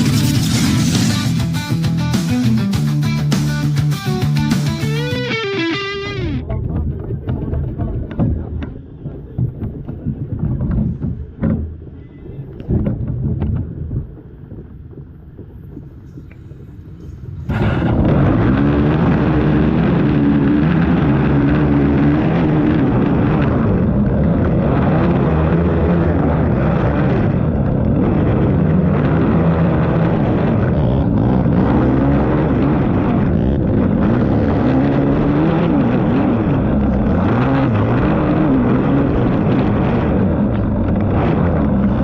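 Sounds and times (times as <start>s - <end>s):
atv engine revving: 0.0s - 6.6s, 17.5s - 42.0s.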